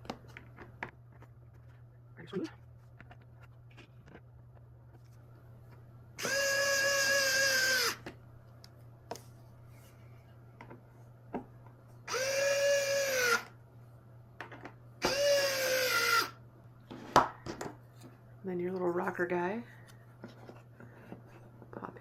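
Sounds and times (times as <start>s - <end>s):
power drill whining: 6.2s - 8.0s, 12.1s - 13.5s, 15.0s - 16.4s.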